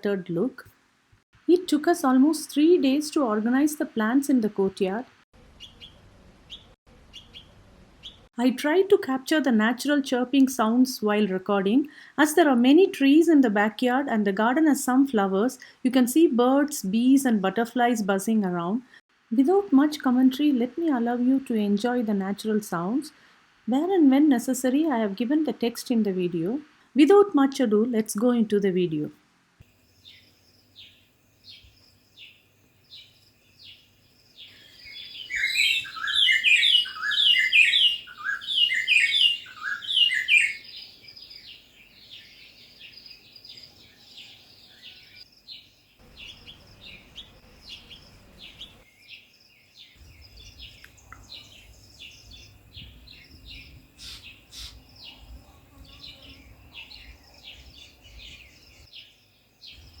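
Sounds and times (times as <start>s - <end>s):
birds chirping: 1.8s - 8.3s, 29.9s - 60.0s.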